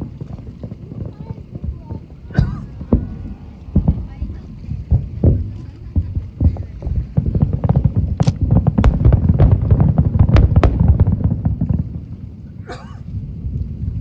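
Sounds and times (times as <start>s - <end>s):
low rumble: 0.0s - 9.0s
firework bangs and crackles: 0.0s - 14.0s.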